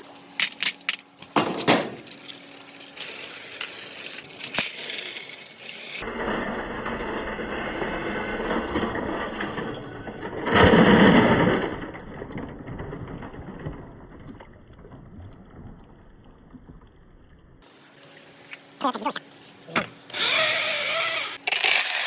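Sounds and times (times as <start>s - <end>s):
marbles rolling and clattering: 0.4s - 15.8s, 20.2s - 22.0s.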